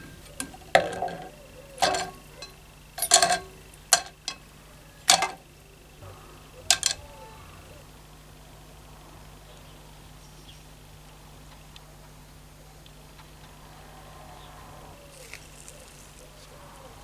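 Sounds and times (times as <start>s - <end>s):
metal lantern parts clinking: 0.0s - 5.5s, 6.6s - 7.3s.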